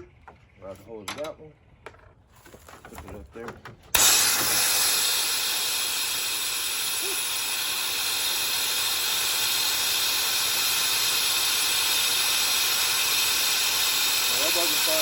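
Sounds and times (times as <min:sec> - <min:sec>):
pressurised gas hissing: 0:03.9 - 0:15.0.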